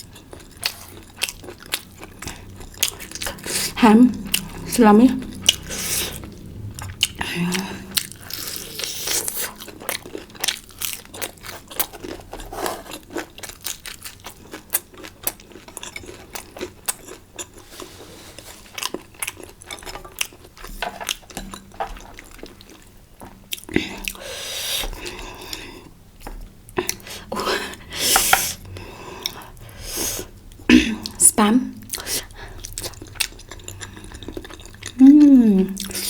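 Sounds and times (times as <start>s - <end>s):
chewing and biting food: 0.0s - 24.2s, 31.9s - 35.0s.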